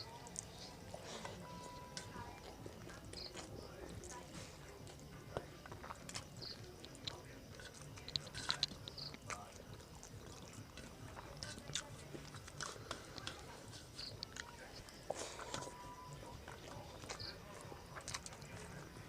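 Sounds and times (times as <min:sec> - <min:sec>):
person chewing food: 0:00.0 - 0:19.0
mouth smacks and clicks: 0:04.9 - 0:18.9.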